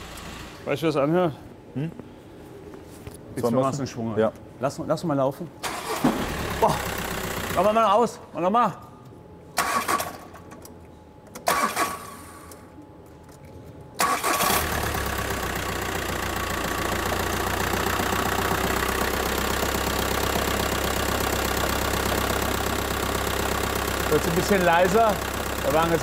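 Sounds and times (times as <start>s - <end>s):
van engine starting and idling: 0.0s - 0.7s, 5.6s - 7.9s, 9.6s - 10.5s, 11.4s - 12.6s, 14.0s - 26.0s
engine knocking: 15.2s - 26.0s.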